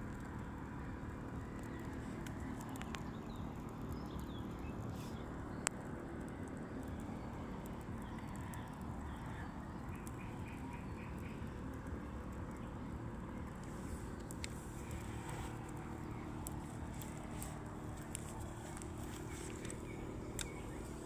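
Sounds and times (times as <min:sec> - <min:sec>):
steady low rumble: 0:00.0 - 0:21.0
faint bird calls: 0:07.9 - 0:11.7.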